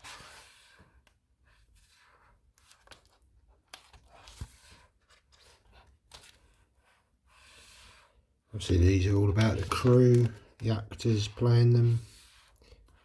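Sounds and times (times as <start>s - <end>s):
book pages turning: 1.7s - 13.0s.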